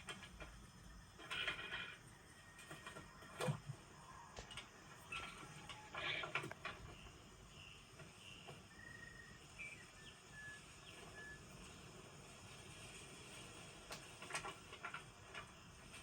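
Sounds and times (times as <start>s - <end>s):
insects chirping: 0.0s - 12.9s.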